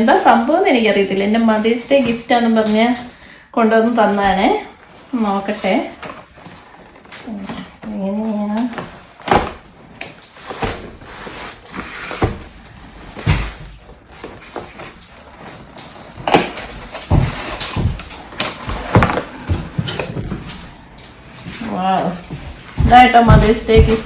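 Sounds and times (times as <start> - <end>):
packaging rustling and scraping: 3.9 - 24.0
sharp knocks of packaging: 8.7 - 20.6.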